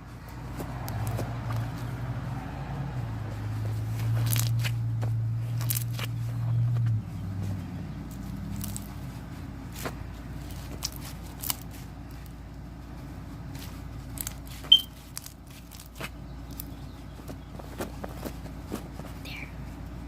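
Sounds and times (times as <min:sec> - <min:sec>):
slime crackling and popping: 0:10.6 - 0:11.6
sharp high squeak: 0:14.7 - 0:15.0.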